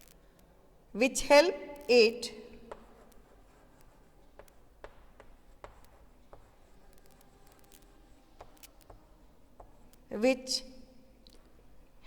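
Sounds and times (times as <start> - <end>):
pen scratching on paper: 2.7 - 10.0.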